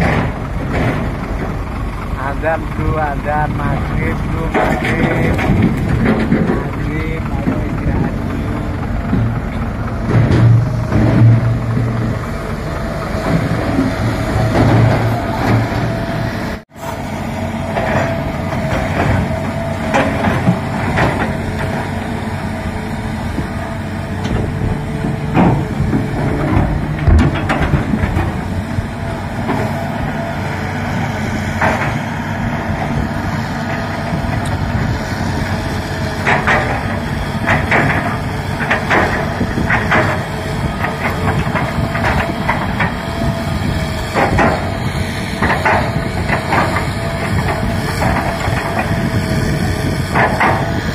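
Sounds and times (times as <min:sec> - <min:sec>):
excavator diesel engine whining: 0:00.0 - 0:50.9
rocks knocking and clanking: 0:03.3 - 0:12.3, 0:23.4 - 0:29.9, 0:35.4 - 0:50.9.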